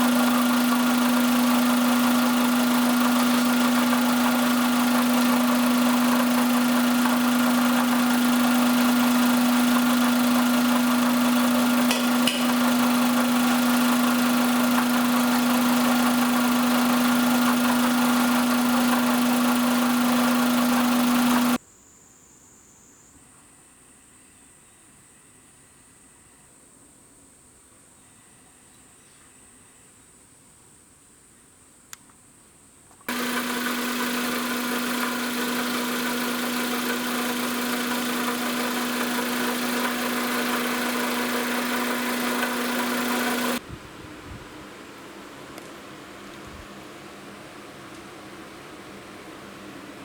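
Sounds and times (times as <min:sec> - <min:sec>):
car engine idling: 0:00.0 - 0:21.6, 0:33.1 - 0:43.6
constant engine whine: 0:00.0 - 0:21.6, 0:33.1 - 0:50.0.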